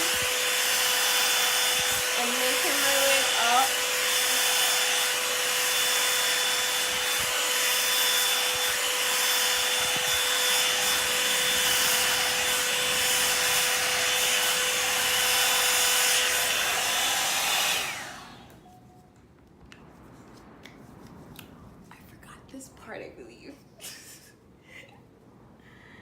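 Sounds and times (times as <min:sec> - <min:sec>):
hot-air brush blowing air: 0:00.0 - 0:18.6
motor whine: 0:00.0 - 0:18.6.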